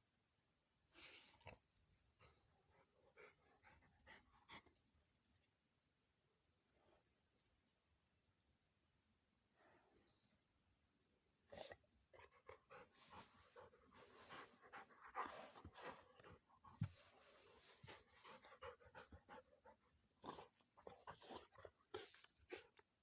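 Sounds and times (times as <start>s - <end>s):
dog panting: 12.1s - 22.8s.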